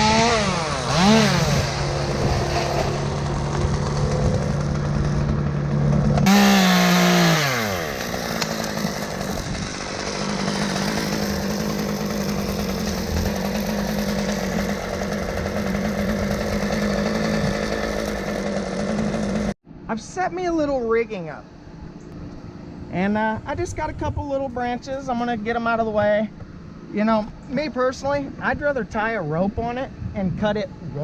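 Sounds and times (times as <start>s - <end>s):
chainsaw engine revving: 0.0s - 19.6s.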